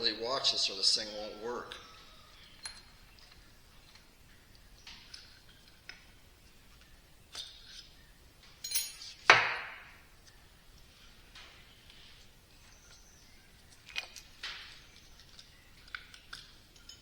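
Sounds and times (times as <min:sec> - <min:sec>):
light metal clinks: 0:01.7 - 0:04.0, 0:08.4 - 0:10.0, 0:15.1 - 0:17.0.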